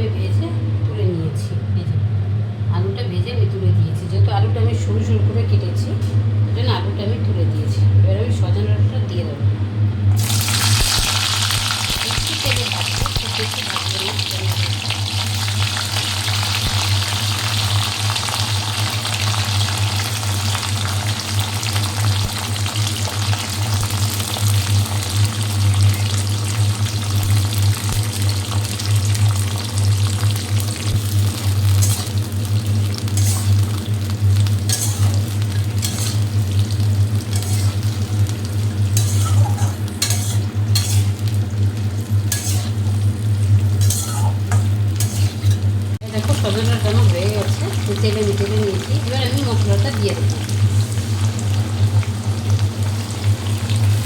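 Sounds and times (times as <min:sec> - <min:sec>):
food sizzling in hot oil: 0:10.2 - 0:54.0
spatula scraping pan: 0:31.4 - 0:32.3, 0:32.9 - 0:41.4, 0:42.1 - 0:45.7.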